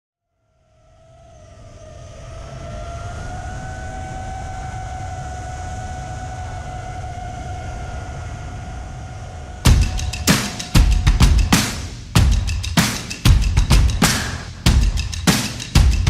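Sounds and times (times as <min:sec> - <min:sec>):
wind rumble on microphone: 0:00.5 - 0:11.5
drone propellers whining: 0:00.8 - 0:16.0.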